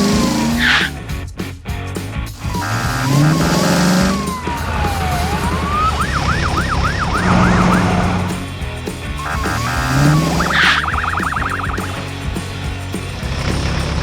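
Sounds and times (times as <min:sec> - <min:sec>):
cartoon police siren: 0:00.0 - 0:00.9, 0:02.6 - 0:08.3, 0:09.2 - 0:12.0.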